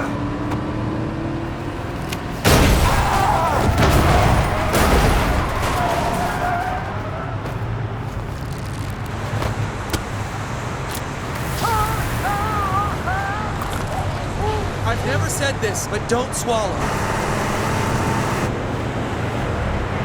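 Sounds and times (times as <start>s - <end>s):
car rumble: 0.0s - 20.0s
loud crash impact: 2.4s - 6.5s.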